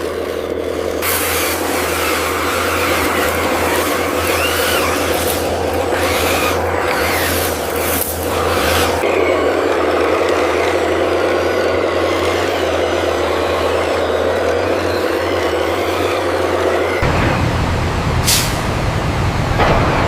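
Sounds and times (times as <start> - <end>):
heavy engine running: 0.0 - 20.0
air brake hisses: 18.2 - 18.7.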